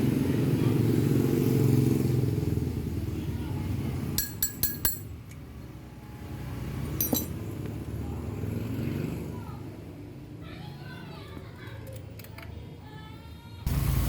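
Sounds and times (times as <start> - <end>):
motorcycle engine running: 0.0 - 5.1, 13.7 - 14.0
sharp metallic clinks: 4.2 - 5.2, 7.0 - 7.4.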